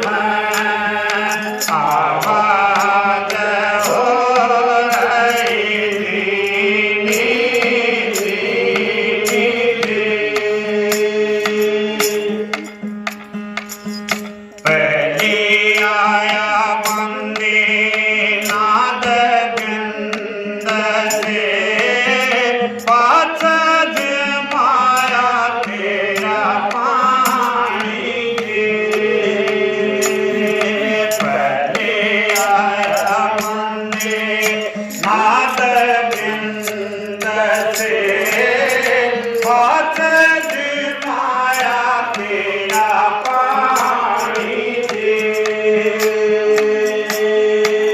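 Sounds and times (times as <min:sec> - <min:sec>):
steady held drone: 0:00.0 - 0:22.6
person singing devotional song: 0:00.0 - 0:47.9.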